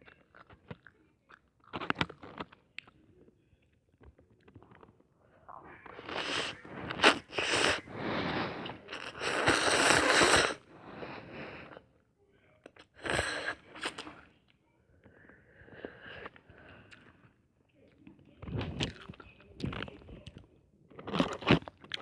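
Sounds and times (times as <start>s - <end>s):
person slurping noodles: 5.7s - 11.8s, 12.9s - 14.2s.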